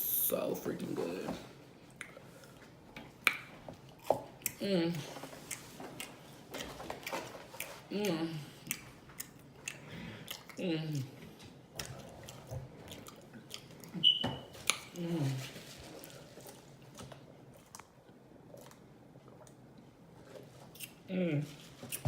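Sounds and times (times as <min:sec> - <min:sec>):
wet chewing and lip smacking: 0:05.4 - 0:06.2, 0:08.6 - 0:10.6, 0:11.8 - 0:14.9
person humming mm: 0:07.9 - 0:08.5, 0:21.1 - 0:21.6.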